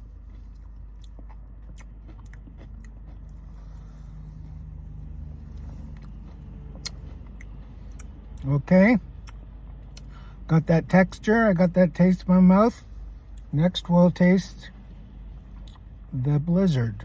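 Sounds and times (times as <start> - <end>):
steady low hum: 0.0 - 17.0
chewing clicks and smacks: 0.2 - 8.5, 9.1 - 10.2, 14.9 - 16.0.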